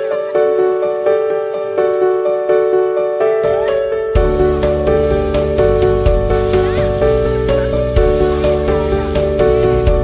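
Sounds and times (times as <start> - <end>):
gentle piano melody: 0.0 - 10.0.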